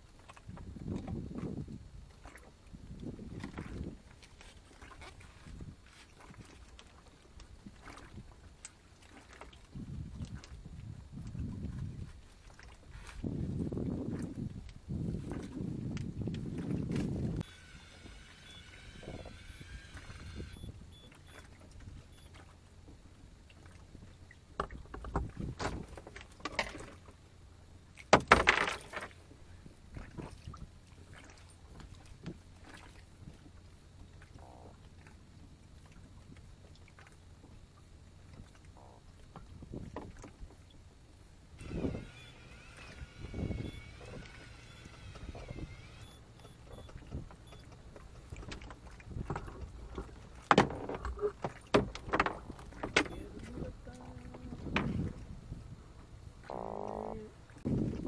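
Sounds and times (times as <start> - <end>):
knocks and clatter on boat: 0.2 - 17.4, 20.0 - 27.2, 28.0 - 29.2, 29.9 - 35.2, 38.3 - 40.7, 41.6 - 55.6
faint low hum: 0.3 - 24.6, 28.7 - 51.7, 52.4 - 58.0
knocks of gear on a boat: 24.5 - 27.2, 28.0 - 29.2, 43.2 - 53.6, 54.2 - 55.2.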